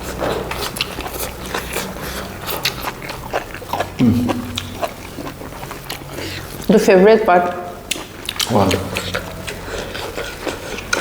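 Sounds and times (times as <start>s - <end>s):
close chewing with wet mouth clicks: 0.0s - 6.7s, 7.8s - 11.0s
person humming: 4.0s - 4.8s.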